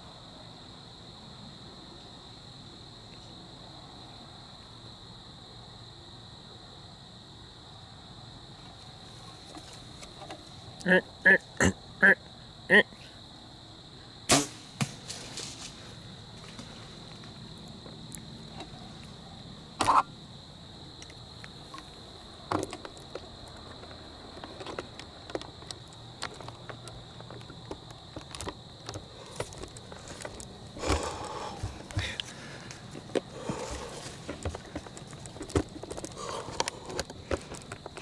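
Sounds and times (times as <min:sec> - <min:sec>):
faint hiss: 0:14.3 - 0:17.1
crackling rustles: 0:14.4 - 0:20.1, 0:21.0 - 0:38.0
rustles and clicks: 0:14.6 - 0:17.6, 0:21.0 - 0:38.0.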